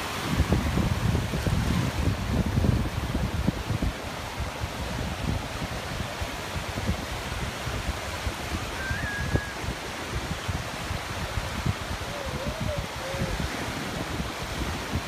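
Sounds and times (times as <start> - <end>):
ocean surf washing on beach: 0.0 - 15.0
wind buffeting microphone: 0.0 - 15.0.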